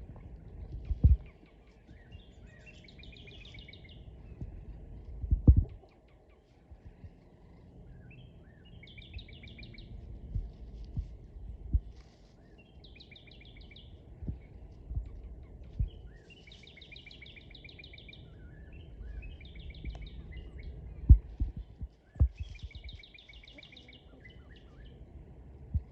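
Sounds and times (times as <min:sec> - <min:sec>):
low rumble: 0:00.0 - 0:05.9, 0:09.0 - 0:12.3, 0:13.5 - 0:23.2, 0:24.7 - 0:25.9
bird chips: 0:11.9 - 0:24.7.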